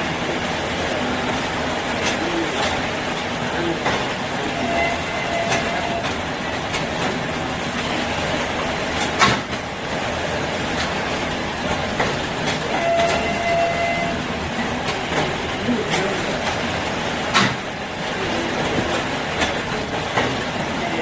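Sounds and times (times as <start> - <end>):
machine rattling rumble: 0.0 - 21.0.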